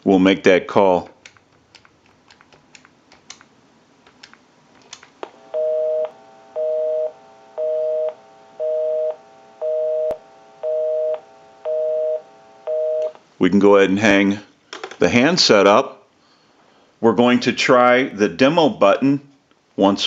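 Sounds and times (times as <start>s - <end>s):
telephone busy signal: 5.5s - 13.2s.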